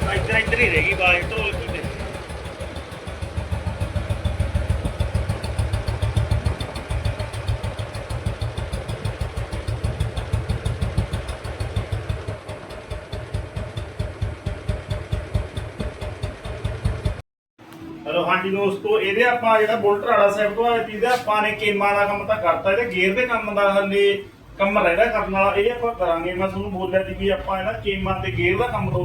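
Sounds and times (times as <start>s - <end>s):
motorcycle engine idling: 0.0s - 17.2s.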